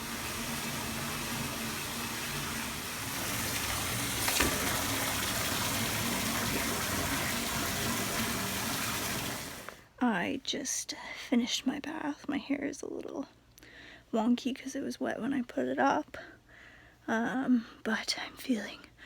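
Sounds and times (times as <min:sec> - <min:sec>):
water running into bathtub: 0:00.0 - 0:09.8.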